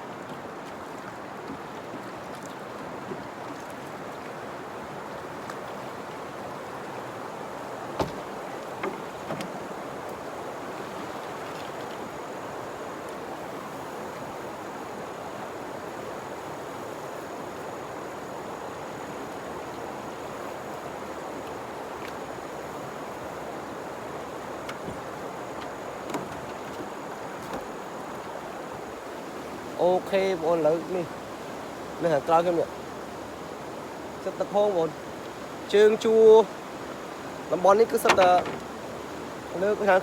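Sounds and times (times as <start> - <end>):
river water rushing over rapids: 0.0 - 40.0
short knocks: 7.9 - 9.6, 37.8 - 38.9.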